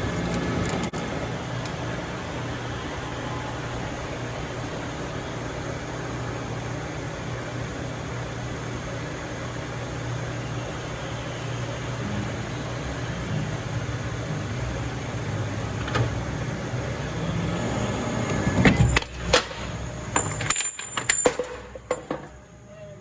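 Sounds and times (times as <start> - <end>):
metal lathe cutting threads: 12.0 - 21.2
sharp metallic clinks: 17.5 - 22.4.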